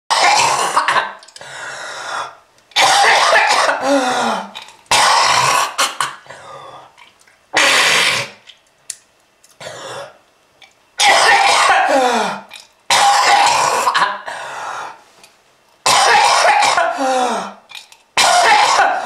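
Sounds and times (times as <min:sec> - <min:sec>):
person coughing hard: 0:00.1 - 0:01.2, 0:02.8 - 0:06.3, 0:07.6 - 0:08.4, 0:11.0 - 0:14.4, 0:15.8 - 0:17.6, 0:18.2 - 0:19.0.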